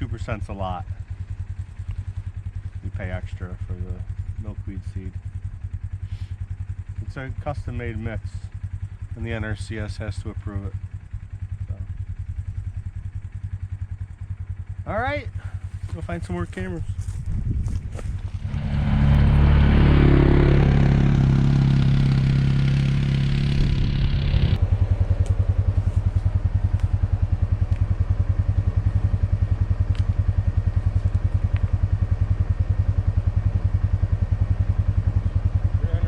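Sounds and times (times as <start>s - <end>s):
engine pulsing under load: 0.0s - 36.0s.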